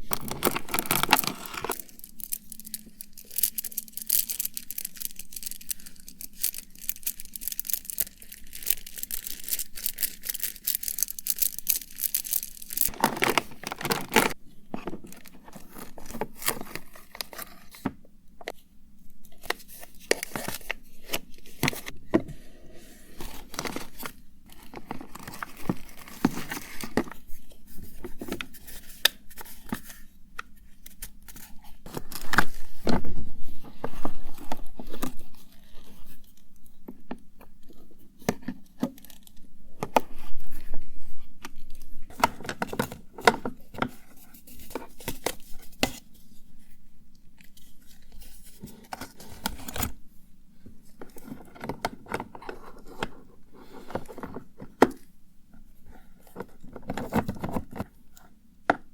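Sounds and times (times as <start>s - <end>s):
clicks taps and scrapes of packaging: 0.0s - 11.2s, 51.0s - 55.1s, 56.2s - 58.9s
packaging crinkling: 0.0s - 17.6s.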